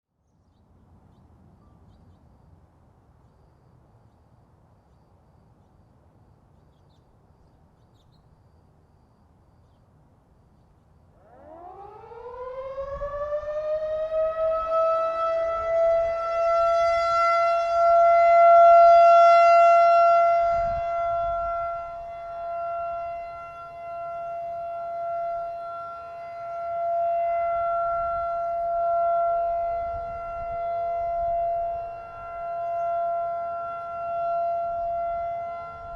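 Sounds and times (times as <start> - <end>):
rotating warning siren: 11.1 - 35.9.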